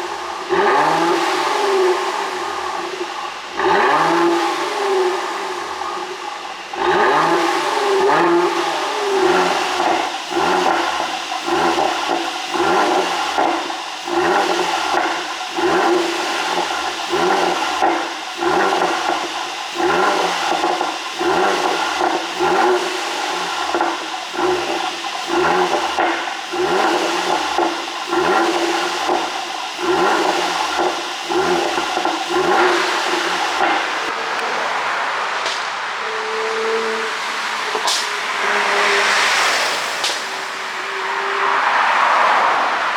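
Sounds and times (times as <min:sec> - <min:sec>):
car engine revving: 0:00.0 - 0:42.9
exhaust popping and crackling: 0:00.0 - 0:42.9.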